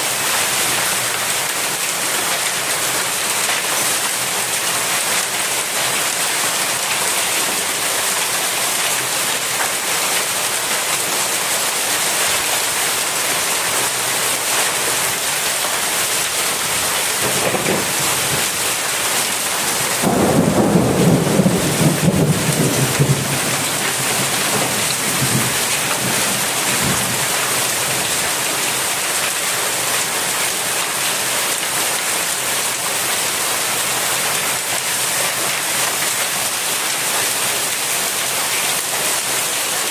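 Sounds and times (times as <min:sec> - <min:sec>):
heavy rain pouring: 0:00.0 - 0:39.9
thunder clap and rumble: 0:17.2 - 0:18.7, 0:20.0 - 0:27.2.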